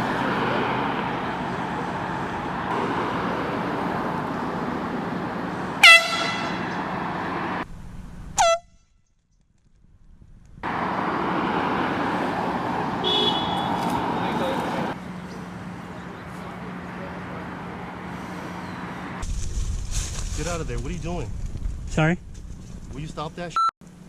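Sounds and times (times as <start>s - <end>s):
air horn blasts: 5.8s - 6.7s, 8.3s - 8.9s, 13.0s - 13.9s.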